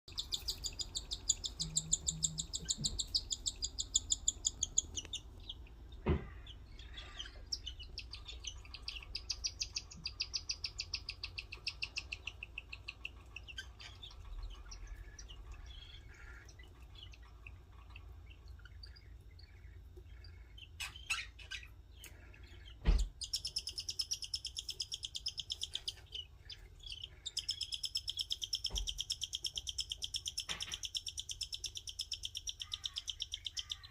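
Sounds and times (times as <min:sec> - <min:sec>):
bird chicks begging chirps: 0:00.1 - 0:33.9.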